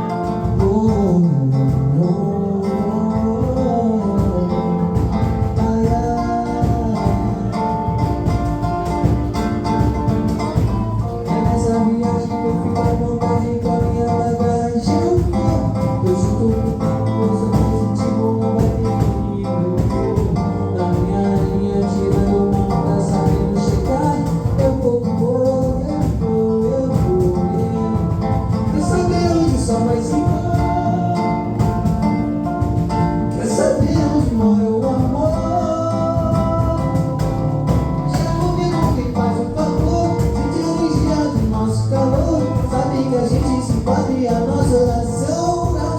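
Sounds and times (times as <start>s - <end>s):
guitar strumming and plucking: 0.0s - 45.9s
person singing: 11.0s - 32.0s, 33.4s - 45.9s.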